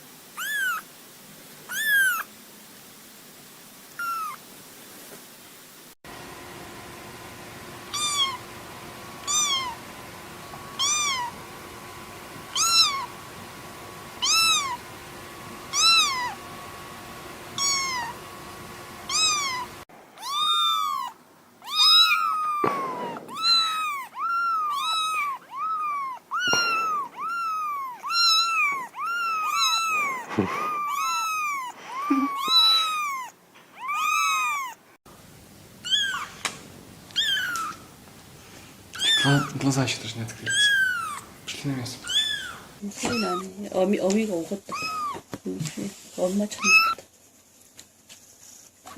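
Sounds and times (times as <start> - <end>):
faint steady hum: 0.0 - 48.7
kittens meowing: 0.4 - 0.9, 1.7 - 2.3, 4.0 - 4.4, 7.9 - 8.5, 9.2 - 9.9, 10.6 - 11.6, 12.5 - 13.3, 14.2 - 14.9, 15.6 - 16.6, 17.5 - 18.3, 19.0 - 34.9, 35.8 - 36.5, 37.1 - 37.8, 38.9 - 39.6, 40.4 - 41.4, 42.0 - 43.6, 44.6 - 45.3, 46.6 - 47.0.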